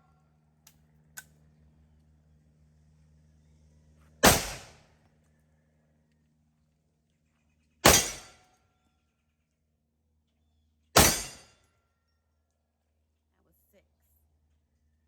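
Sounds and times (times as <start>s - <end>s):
steel target ringing: 4.2s - 4.7s, 7.8s - 8.4s, 11.0s - 11.5s
pistol gunshots: 4.2s - 4.8s, 7.8s - 8.3s, 11.0s - 11.4s.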